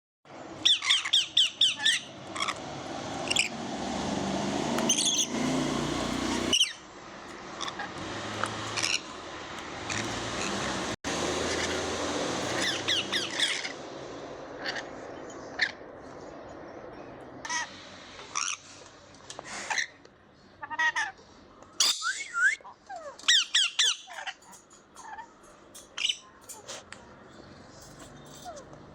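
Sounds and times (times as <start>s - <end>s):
birds chirping: 0.3s - 28.9s
steady background noise: 6.8s - 28.9s.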